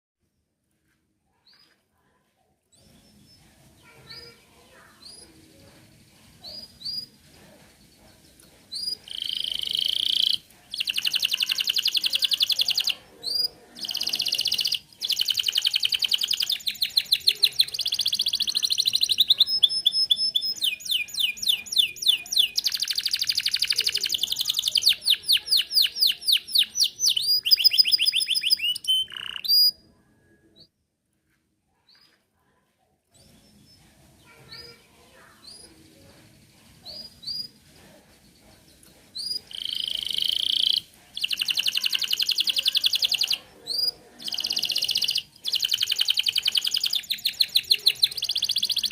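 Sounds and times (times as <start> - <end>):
canary singing: 2.7 - 7.2, 8.2 - 30.7, 33.1 - 37.7, 38.5 - 48.9.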